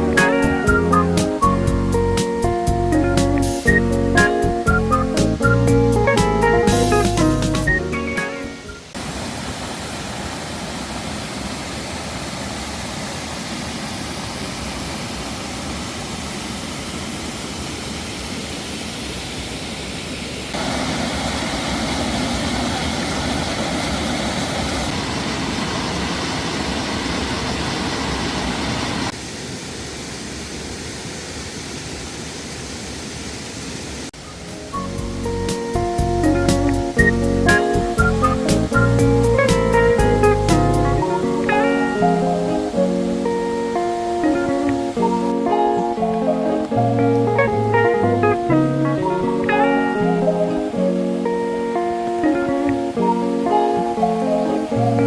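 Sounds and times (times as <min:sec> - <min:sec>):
stream rushing over rocks: 0:07.9 - 0:34.8.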